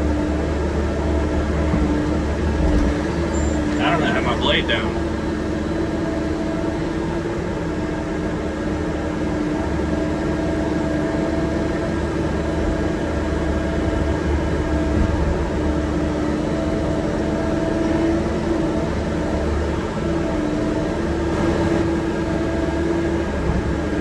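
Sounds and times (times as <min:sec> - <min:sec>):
excavator engine running: 0:00.0 - 0:05.5.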